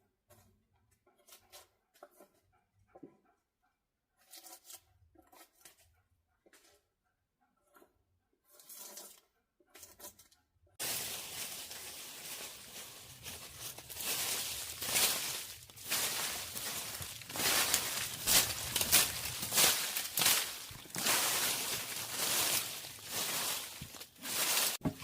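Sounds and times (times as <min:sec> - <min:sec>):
tearing crunching handling noise: 0:10.8 - 0:24.8.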